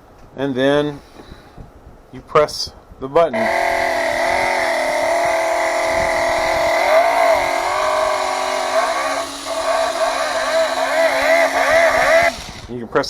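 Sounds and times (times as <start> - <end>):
recorded engine sound through small speaker: 3.3 - 12.8.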